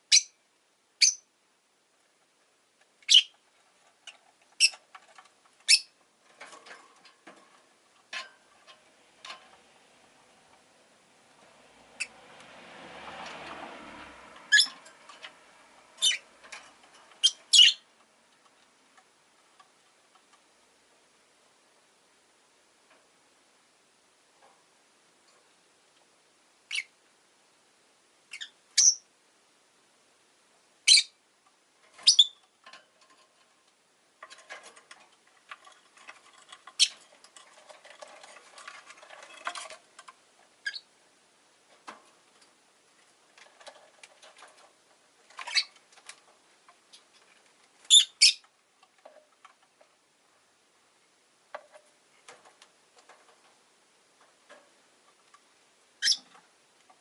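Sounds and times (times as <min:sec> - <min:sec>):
lovebird chirping: 0:00.0 - 0:00.4, 0:01.0 - 0:01.3, 0:03.0 - 0:03.4, 0:05.6 - 0:06.0, 0:14.5 - 0:14.7, 0:16.0 - 0:16.2, 0:17.2 - 0:17.8, 0:26.7 - 0:26.9, 0:28.3 - 0:29.1, 0:30.8 - 0:31.2, 0:32.0 - 0:32.4, 0:40.6 - 0:40.9, 0:45.5 - 0:45.7, 0:47.9 - 0:48.4, 0:56.0 - 0:56.3
soft rapid clicking and rustling: 0:31.4 - 0:40.6.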